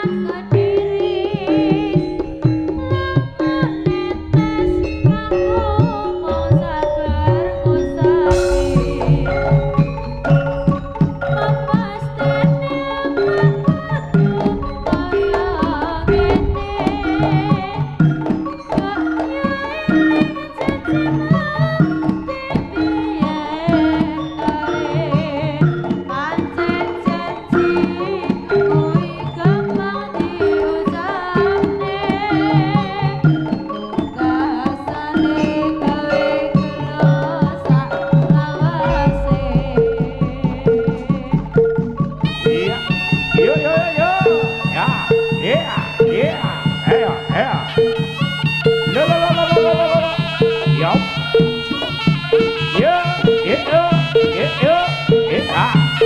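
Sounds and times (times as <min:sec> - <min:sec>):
hand drums beating: 0:00.0 - 0:56.0
wavering high melody: 0:02.0 - 0:25.5, 0:37.9 - 0:56.0
pitched chime notes: 0:04.5 - 0:15.8, 0:38.8 - 0:56.0.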